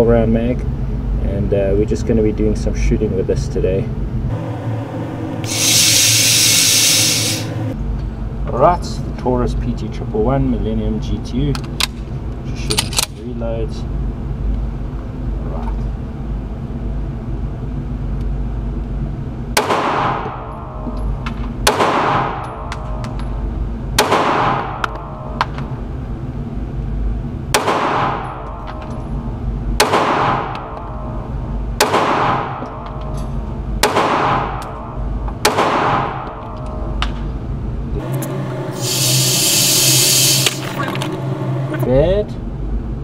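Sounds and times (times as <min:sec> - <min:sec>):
low rumble: 0:03.9 - 0:08.4
pistol shots echoing: 0:33.8 - 0:34.6.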